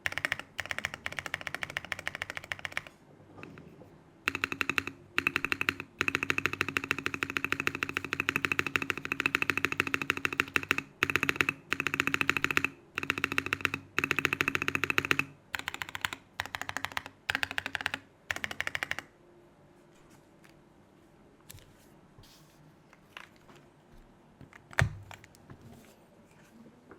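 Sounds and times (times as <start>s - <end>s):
typing on mechanical keyboard: 0.0s - 3.6s, 4.3s - 19.1s.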